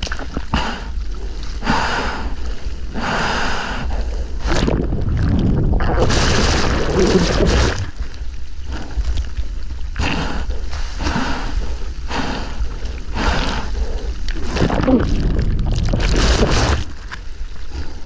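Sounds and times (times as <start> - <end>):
seawater splashing and rushing: 3.9 - 18.0.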